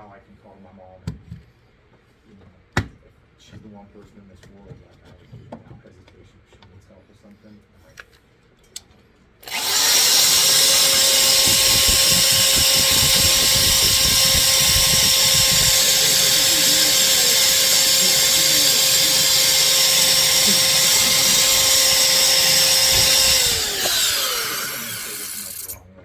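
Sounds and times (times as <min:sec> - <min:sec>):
power tool whining: 0:09.4 - 0:25.8.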